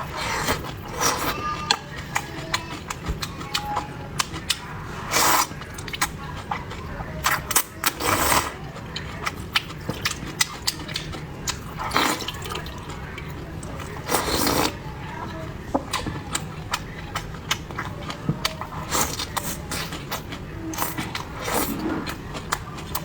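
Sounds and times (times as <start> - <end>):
crunchy chewing: 0.0 - 23.0.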